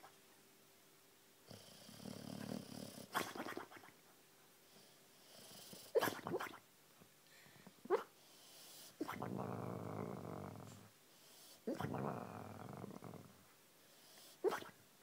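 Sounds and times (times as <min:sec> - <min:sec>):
dog snoring: 0:01.5 - 0:03.7, 0:04.8 - 0:06.3, 0:07.9 - 0:13.4
muffled dog barks: 0:14.4 - 0:14.8.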